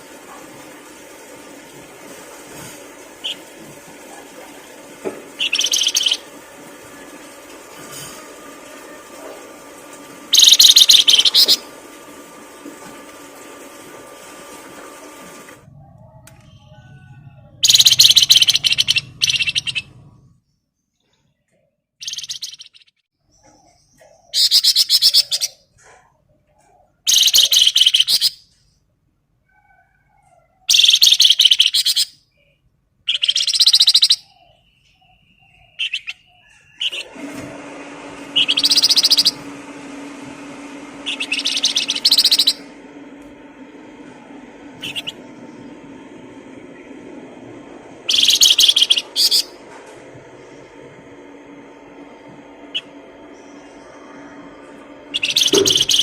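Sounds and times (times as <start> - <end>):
songbird chattering song: 5.4 - 6.2, 10.3 - 11.6, 17.6 - 19.9, 22.0 - 25.6, 27.1 - 28.3, 30.7 - 37.0, 38.4 - 39.4, 41.1 - 42.6, 48.1 - 49.6, 55.1 - 56.0
steady low hum: 38.0 - 56.0.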